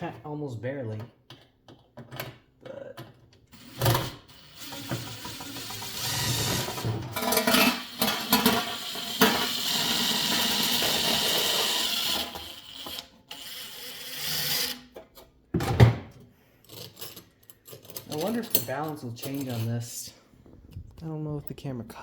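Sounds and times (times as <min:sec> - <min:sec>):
metal parts clicking and rattling: 0:01.3 - 0:13.5, 0:16.6 - 0:20.0
power driver driving a screw: 0:07.8 - 0:14.9.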